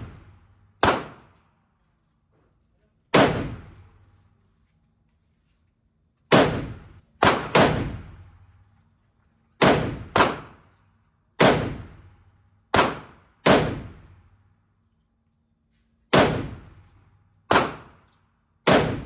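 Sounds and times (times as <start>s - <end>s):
echoing gunshots indoors: 0.0s - 1.8s, 3.1s - 4.4s, 6.3s - 8.6s, 9.5s - 14.7s, 16.0s - 19.0s.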